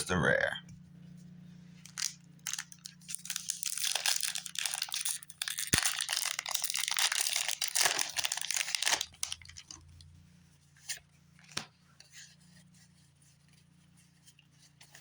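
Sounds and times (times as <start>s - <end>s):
foil wrapper crinkling and tearing: 1.8s - 10.0s.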